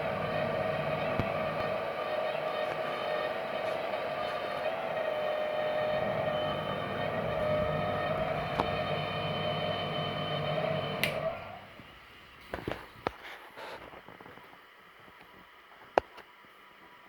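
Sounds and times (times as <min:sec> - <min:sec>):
oil burner humming and whining: 0:00.0 - 0:17.0
click: 0:01.1 - 0:01.4, 0:08.5 - 0:08.8, 0:11.0 - 0:11.3.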